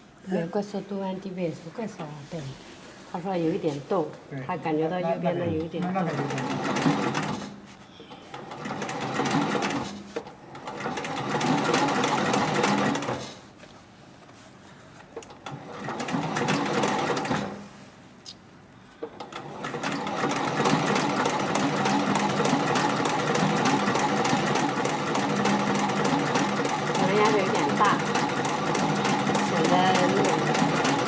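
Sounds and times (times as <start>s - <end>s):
sewing machine stitching: 5.8s - 7.6s, 8.3s - 13.3s, 15.5s - 17.6s, 19.2s - 31.0s.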